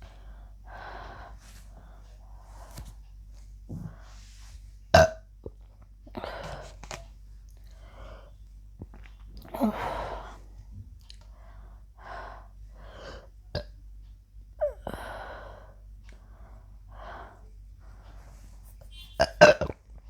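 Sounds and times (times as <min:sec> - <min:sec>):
woman breathing hard: 0:00.0 - 0:02.8, 0:09.5 - 0:10.5, 0:11.3 - 0:13.3, 0:14.6 - 0:17.4.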